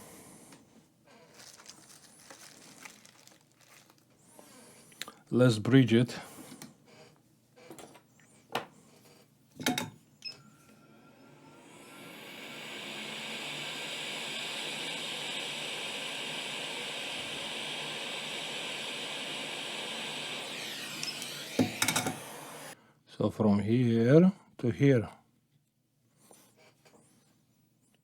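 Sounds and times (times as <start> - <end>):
electric blower fan running: 10.7 - 22.8.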